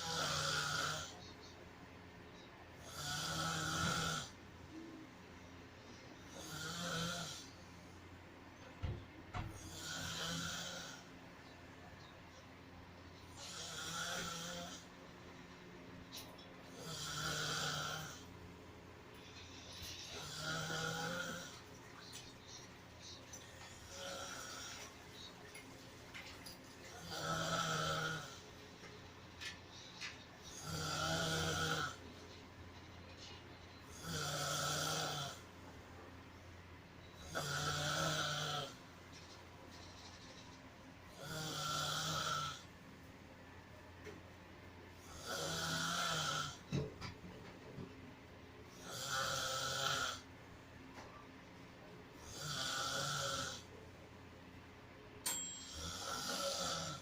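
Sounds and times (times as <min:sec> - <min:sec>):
loud snoring: 0:00.0 - 0:01.2, 0:02.8 - 0:04.4, 0:06.3 - 0:07.6, 0:09.5 - 0:11.1, 0:13.3 - 0:14.9, 0:16.8 - 0:18.3, 0:20.0 - 0:21.6, 0:23.8 - 0:24.9, 0:27.0 - 0:28.4, 0:30.5 - 0:32.0, 0:33.9 - 0:35.5, 0:37.2 - 0:38.8, 0:41.1 - 0:42.7, 0:45.0 - 0:46.6, 0:48.8 - 0:50.3, 0:52.2 - 0:53.7, 0:55.7 - 0:57.0.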